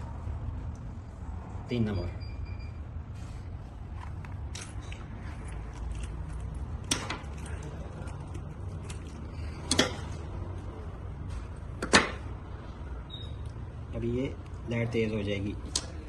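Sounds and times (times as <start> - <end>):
sharp clicks of wire connections: 9.7 - 10.0, 15.6 - 16.0.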